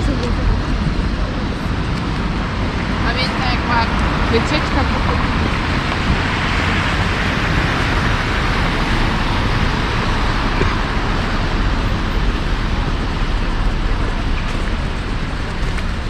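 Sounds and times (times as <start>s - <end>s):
cars passing on street: 0.0s - 16.0s.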